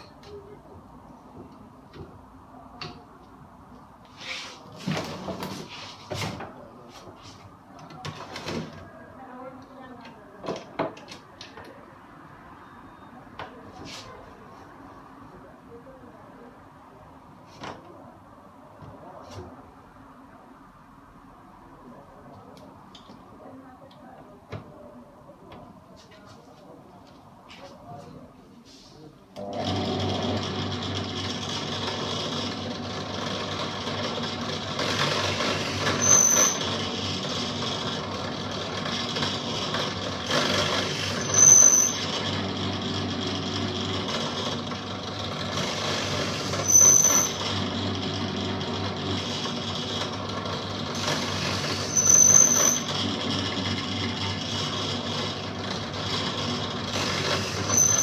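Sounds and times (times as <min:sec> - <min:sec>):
electric power tool running: 0:29.4 - 0:58.0.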